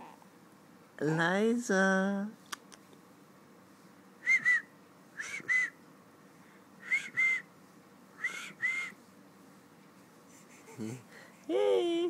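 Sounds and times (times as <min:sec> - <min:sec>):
person whistling two-note calls: 0:04.2 - 0:05.8, 0:06.8 - 0:07.4, 0:08.2 - 0:09.0.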